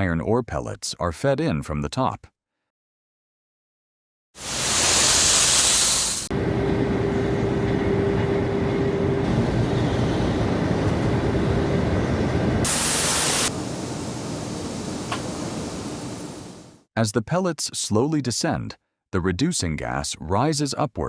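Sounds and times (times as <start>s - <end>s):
hissing gas: 4.4s - 6.3s, 12.6s - 16.7s
low rumbling machinery: 6.3s - 16.7s.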